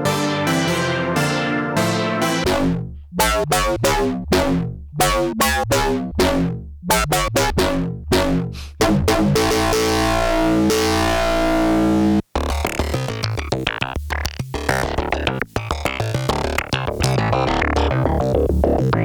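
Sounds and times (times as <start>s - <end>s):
sustained synthesizer chord: 0.0s - 12.2s
synthesizer short pitched notes: 0.0s - 12.2s.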